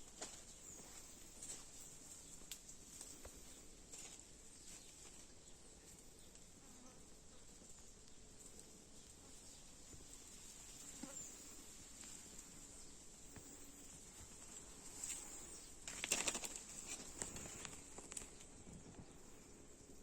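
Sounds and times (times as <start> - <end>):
insect hiss: 5.8 - 20.0
rustling and crackling: 7.4 - 19.6.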